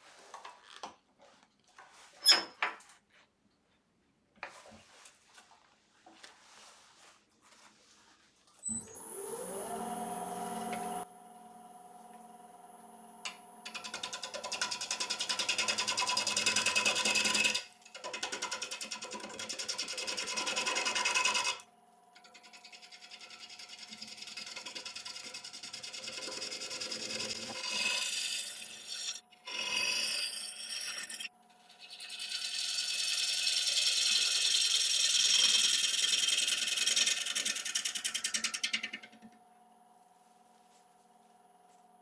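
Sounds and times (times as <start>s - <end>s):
lathe motor hum: 8.7s - 21.6s, 22.3s - 38.2s
gouge scraping spinning wood: 13.6s - 39.3s.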